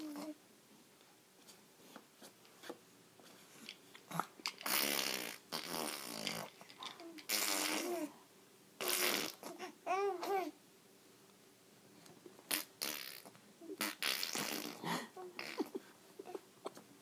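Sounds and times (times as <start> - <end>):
baby spluttering mouth noises: 4.1 - 8.1.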